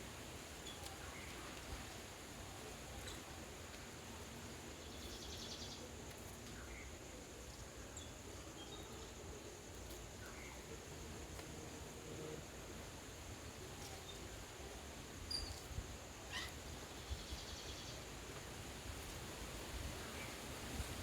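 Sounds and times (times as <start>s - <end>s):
steady hiss: 6.6s - 21.0s.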